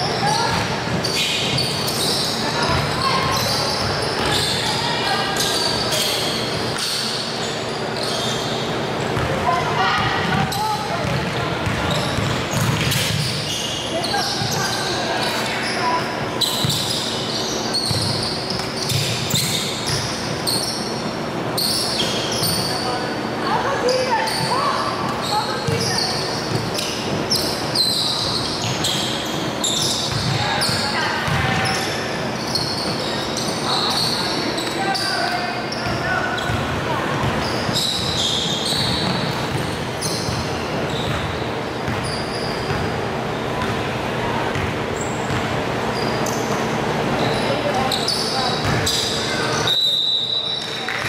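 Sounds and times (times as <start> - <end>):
basketball bouncing: 0.4 - 1.8, 9.0 - 9.4, 10.0 - 13.4, 17.9 - 20.2, 30.0 - 31.7, 35.8 - 43.0, 43.6 - 43.9, 44.5 - 45.6
short high squeaks: 1.0 - 4.8, 5.4 - 8.6, 12.9 - 21.0.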